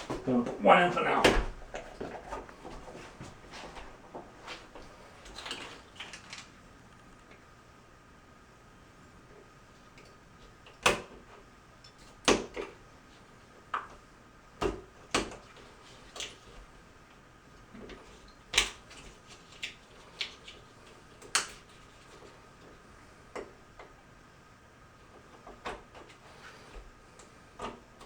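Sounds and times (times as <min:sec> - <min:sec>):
faint hum: 0:00.0 - 0:10.6.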